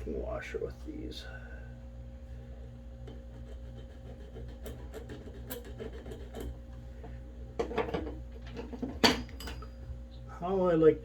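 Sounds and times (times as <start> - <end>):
low electrical hum: 0.0 - 11.0.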